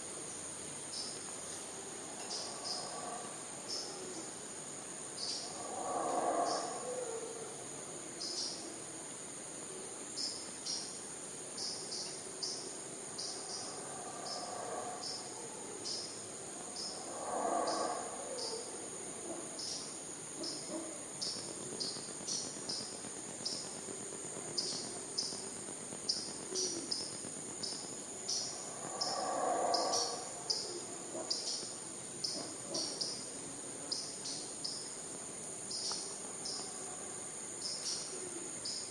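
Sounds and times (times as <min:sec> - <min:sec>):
insects droning: 0:00.0 - 0:38.9
distant howler monkey calls: 0:01.7 - 0:08.9, 0:12.4 - 0:33.3.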